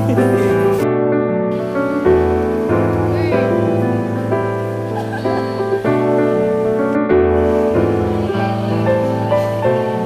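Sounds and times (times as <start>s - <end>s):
gentle piano instrumental: 0.0s - 10.0s.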